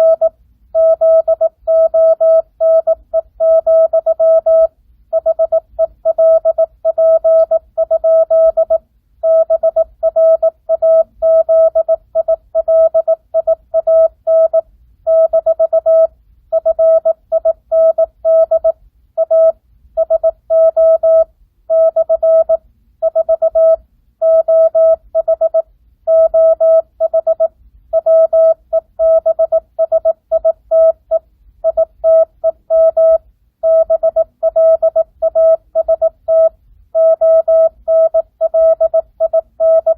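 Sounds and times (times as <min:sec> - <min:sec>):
morse code beeps: 0:00.0 - 0:39.9.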